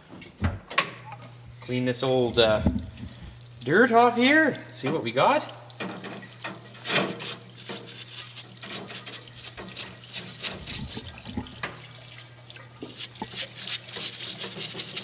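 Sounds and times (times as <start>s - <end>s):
steady low hum: 1.4s - 3.6s
liquid splashing and dribbling: 2.1s - 15.0s
brush scrubbing: 2.2s - 3.4s, 6.8s - 11.7s, 12.8s - 15.0s.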